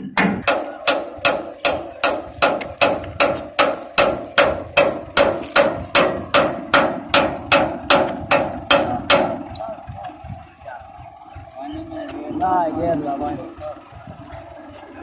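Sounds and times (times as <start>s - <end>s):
metallic knocking: 0.0s - 10.3s.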